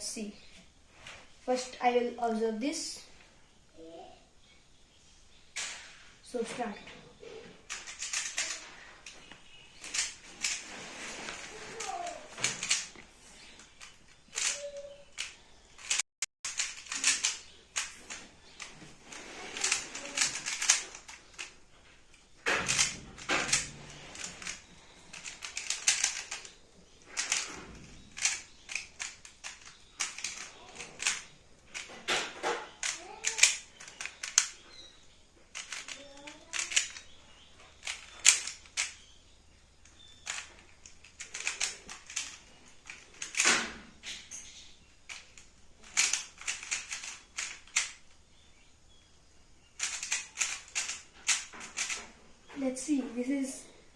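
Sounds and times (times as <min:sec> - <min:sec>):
puzzle cube clicking and rattling: 0:07.6 - 0:34.9, 0:35.5 - 0:39.2, 0:39.9 - 0:48.2, 0:49.8 - 0:52.2.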